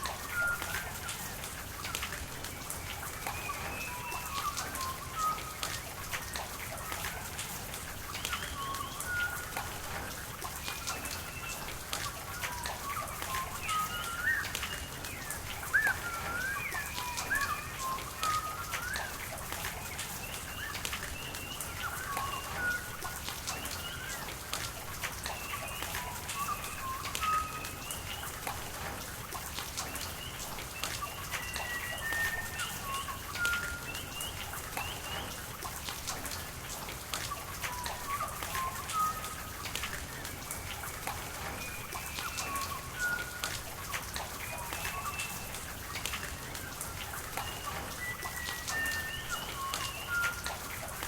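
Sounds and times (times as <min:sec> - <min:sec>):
rain dripping and pattering: 0:00.0 - 0:51.0
birds whistling: 0:02.8 - 0:05.9, 0:12.3 - 0:24.3, 0:25.3 - 0:28.6, 0:30.9 - 0:35.4, 0:37.7 - 0:39.6, 0:41.1 - 0:43.5, 0:47.3 - 0:50.7.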